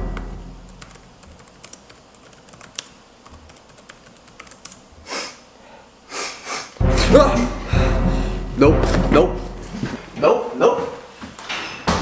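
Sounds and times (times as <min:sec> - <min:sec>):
computer keyboard typing: 0:00.7 - 0:04.8.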